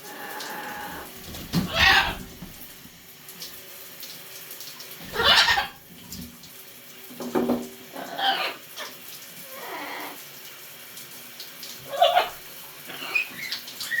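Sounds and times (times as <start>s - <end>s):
parrot calling: 0.0s - 2.3s, 5.1s - 5.8s, 8.0s - 8.9s, 11.9s - 14.0s
water running from a tap: 0.0s - 14.0s.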